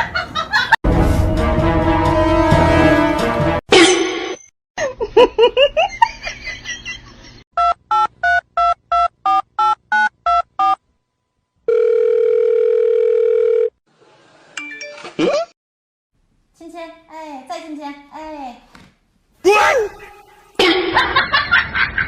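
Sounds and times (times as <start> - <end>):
steady telephone tone: 11.7 - 13.8.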